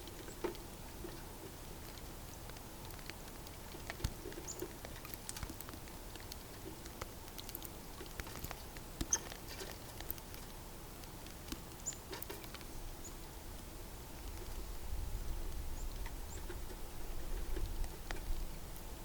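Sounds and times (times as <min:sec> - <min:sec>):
squirrel crunching seeds: 0:00.2 - 0:12.7.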